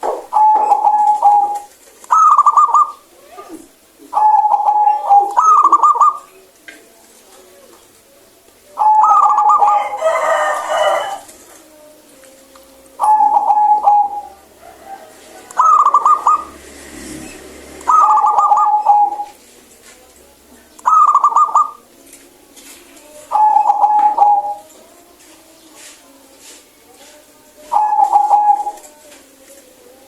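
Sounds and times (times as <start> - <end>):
dove cooing: 0.0 - 6.5, 8.7 - 11.9, 12.9 - 19.5, 20.8 - 21.9, 23.0 - 24.8, 27.6 - 29.1
rough bird call: 13.0 - 19.4.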